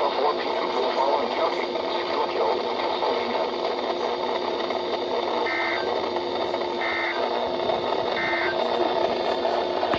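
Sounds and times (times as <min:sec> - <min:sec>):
radio receiver hiss: 0:00.0 - 0:09.9
digital data bursts: 0:05.4 - 0:06.0, 0:06.7 - 0:07.4, 0:08.1 - 0:08.7.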